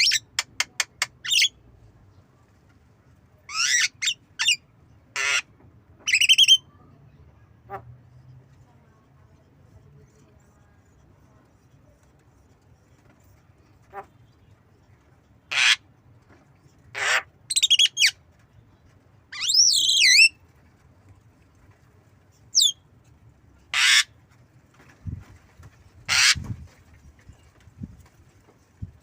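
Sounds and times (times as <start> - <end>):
bird harsh rasping calls: 3.5 - 4.6, 5.2 - 5.5, 15.5 - 15.8, 23.7 - 24.1, 26.1 - 26.4.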